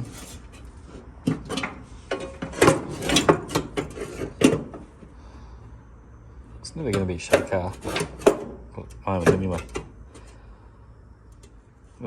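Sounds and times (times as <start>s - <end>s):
metal parts clanking: 1.2s - 4.8s, 6.9s - 9.8s.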